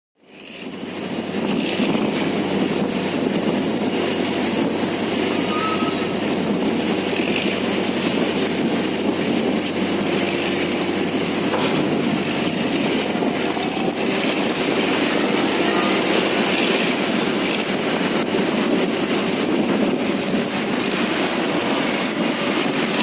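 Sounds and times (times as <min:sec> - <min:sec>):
heavy diesel engine running: 0:00.3 - 0:23.0.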